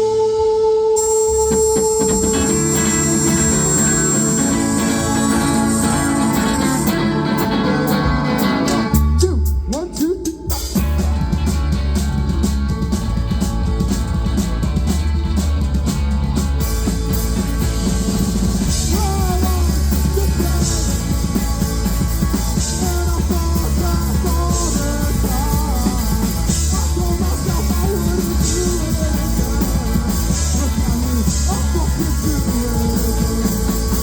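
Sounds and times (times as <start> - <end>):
heavy bass: 1.0 - 34.0
live rock band playing: 1.0 - 34.0.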